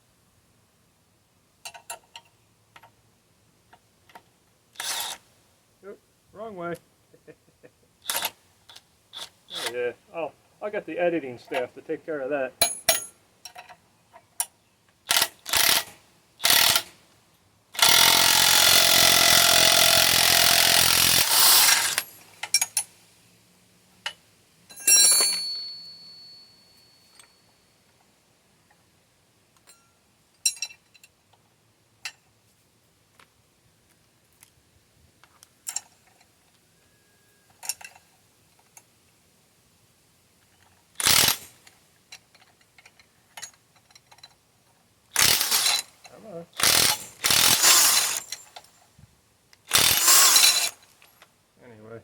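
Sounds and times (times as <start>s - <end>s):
light metal clicks and clanks: 1.6s - 3.0s, 12.6s - 15.0s, 22.3s - 23.0s, 29.5s - 32.4s, 35.2s - 39.2s, 41.6s - 44.9s.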